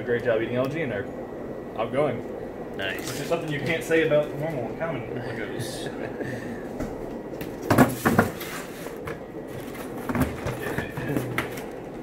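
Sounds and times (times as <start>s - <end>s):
shipping boxes knocking: 7.6s - 8.4s, 9.8s - 11.6s.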